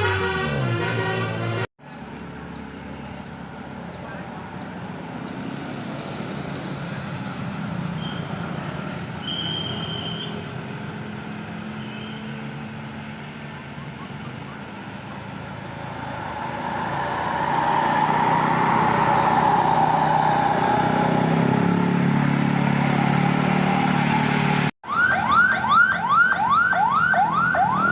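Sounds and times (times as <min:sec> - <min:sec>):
car siren-style horn whooping: 0:00.0 - 0:01.7, 0:22.7 - 0:27.9
street traffic: 0:00.0 - 0:27.9.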